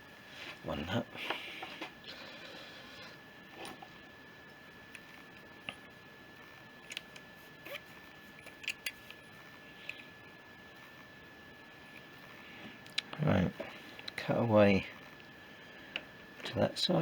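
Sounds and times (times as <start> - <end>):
faint high-pitched hum: 0.0 - 17.0
small metal parts clicking: 8.4 - 9.0.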